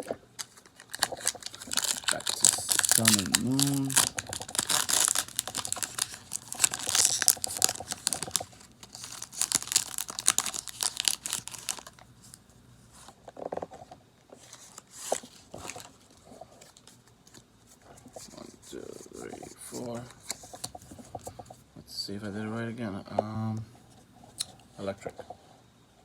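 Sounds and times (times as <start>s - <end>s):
cards rustling: 0.0s - 12.4s, 14.4s - 21.5s
foil wrapper crinkling and tearing: 0.0s - 12.4s, 14.5s - 17.4s.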